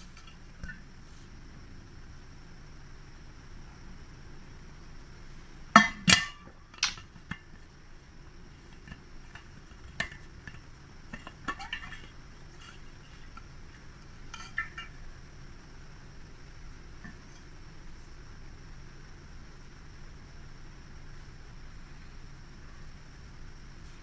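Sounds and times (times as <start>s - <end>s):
dishes clinking: 5.8s - 7.4s, 14.3s - 15.0s.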